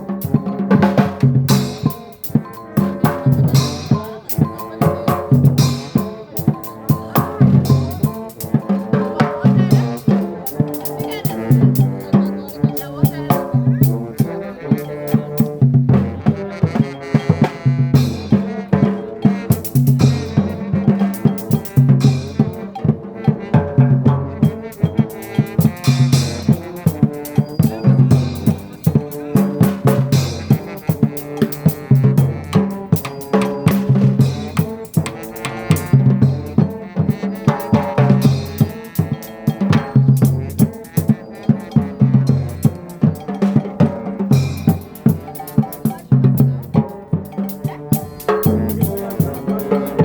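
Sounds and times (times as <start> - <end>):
drum beat: 0.0 - 50.0
trombones holding low notes: 0.0 - 50.0.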